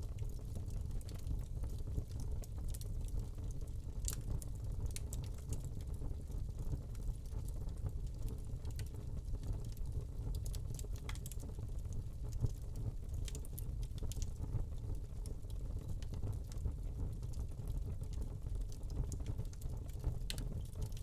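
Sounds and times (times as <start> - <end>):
fire crackling and popping: 0.0 - 21.0
rumble of fire flames: 0.0 - 21.0.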